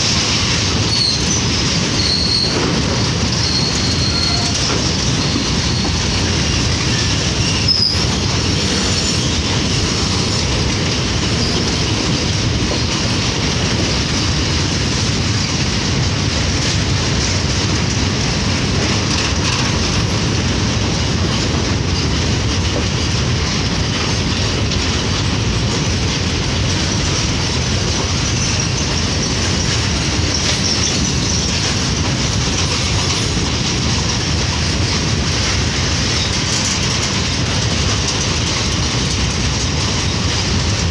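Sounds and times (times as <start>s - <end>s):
freight train wheels rumbling: 0.0s - 40.9s
wheel squeal: 0.6s - 10.5s, 11.2s - 13.1s, 28.0s - 33.8s.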